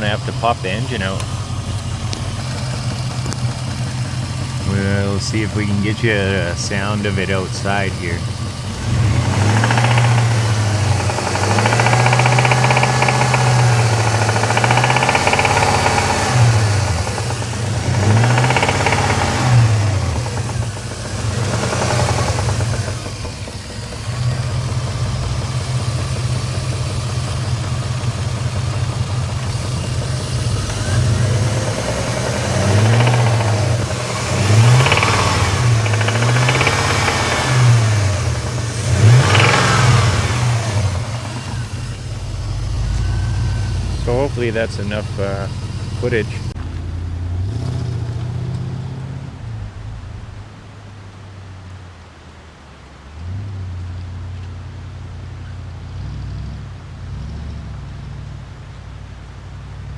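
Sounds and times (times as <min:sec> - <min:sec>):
engine knock: 0:00.0 - 0:46.7
car engine revving: 0:00.0 - 0:52.5.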